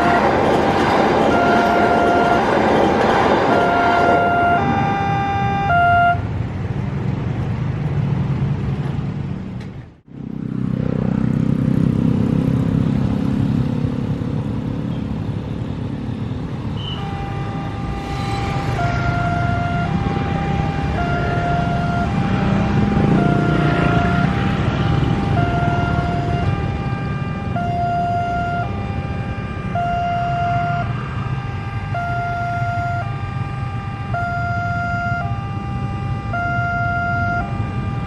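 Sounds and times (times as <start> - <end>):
two-tone warning siren: 0.0 - 6.3, 15.8 - 38.0
road traffic engines rumbling: 0.0 - 38.0.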